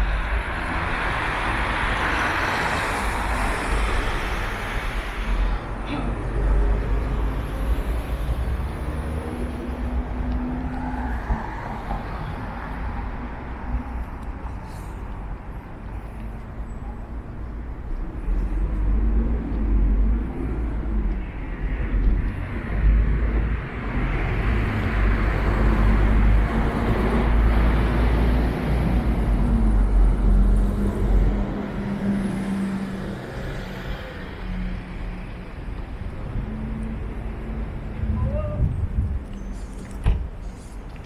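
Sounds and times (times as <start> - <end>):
road traffic rumble and tyre hiss: 0.0 - 41.0.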